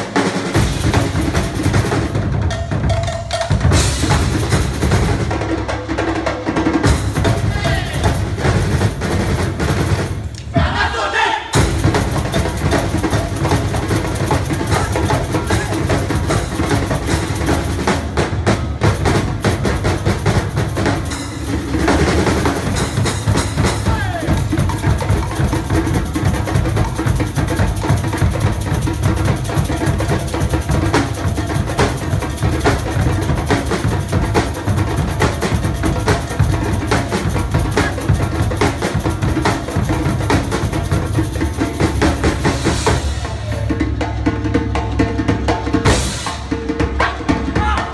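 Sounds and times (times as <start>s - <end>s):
percussion ensemble drumming: 0.0s - 47.9s
bass drum: 11.6s - 47.9s.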